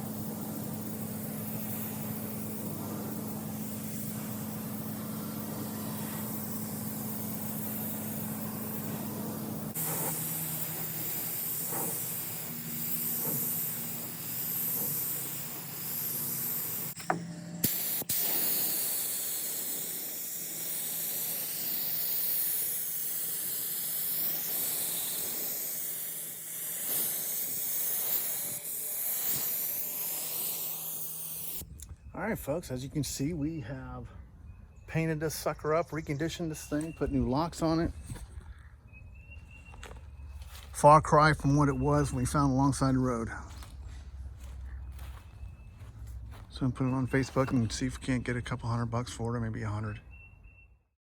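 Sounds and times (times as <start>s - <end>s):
low hum: 0.0s - 21.2s
spraying hiss: 0.0s - 31.6s.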